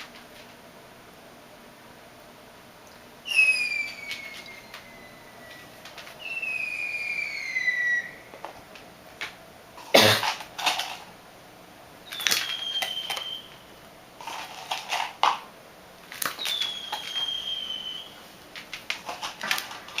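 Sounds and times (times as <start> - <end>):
falling whistle: 3.2 - 8.3, 12.1 - 13.6, 16.4 - 18.2.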